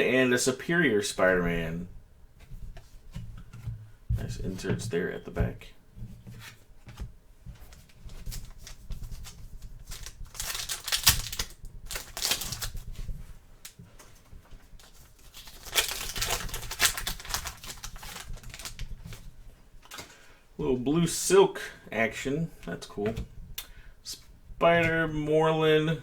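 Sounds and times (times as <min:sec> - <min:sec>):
wrapper crinkling and tearing: 0:07.7 - 0:13.0, 0:14.8 - 0:20.0
cards clicking: 0:09.9 - 0:12.7.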